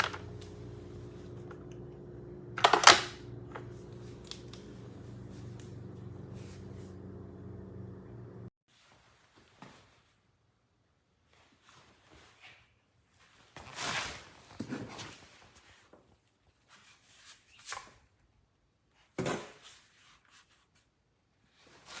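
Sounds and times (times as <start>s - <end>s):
handling rubs: 3.4s - 8.1s.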